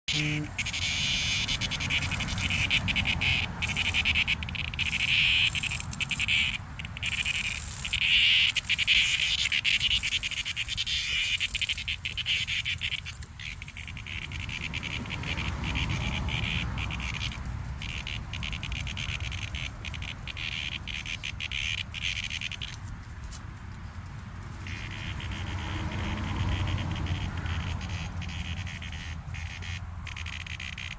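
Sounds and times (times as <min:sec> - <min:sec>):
cicadas buzzing: 0:00.1 - 0:30.9.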